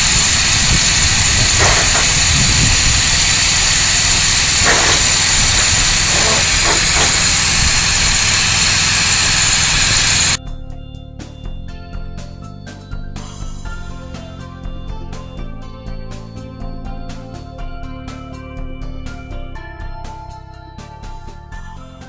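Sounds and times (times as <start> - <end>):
arc welding hiss: 0.0 - 10.4
music: 10.4 - 22.0.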